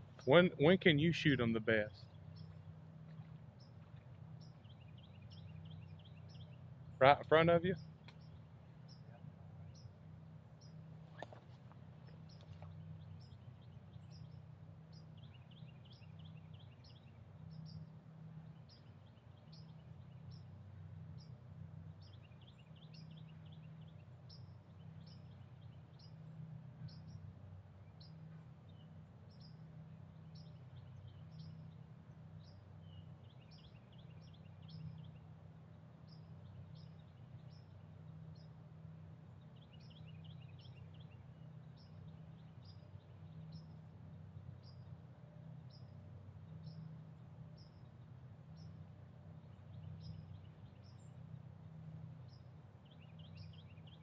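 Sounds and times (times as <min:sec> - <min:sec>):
faint low rumble: 0:00.0 - 0:54.0
small birds chirping: 0:00.0 - 0:54.0
sharp click: 0:11.0 - 0:11.7.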